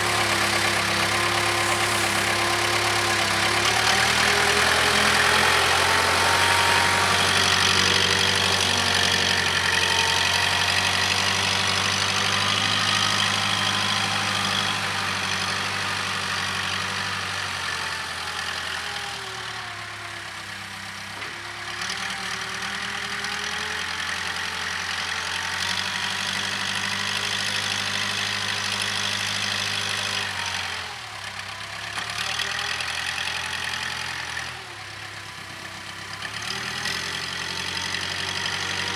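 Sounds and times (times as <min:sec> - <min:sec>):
diesel engine running: 0:00.0 - 0:19.9.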